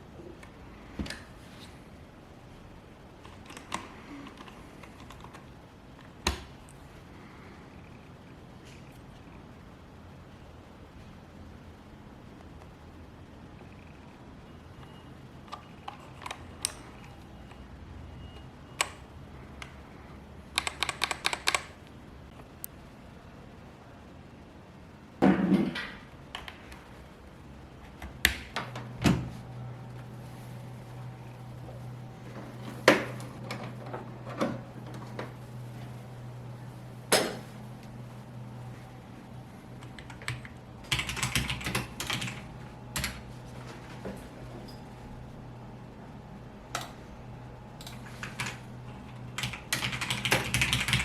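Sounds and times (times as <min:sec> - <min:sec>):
steady low hum: 0:00.0 - 0:51.0
mechanical keyboard keystrokes: 0:20.6 - 0:21.8, 0:39.9 - 0:42.4, 0:49.4 - 0:51.0.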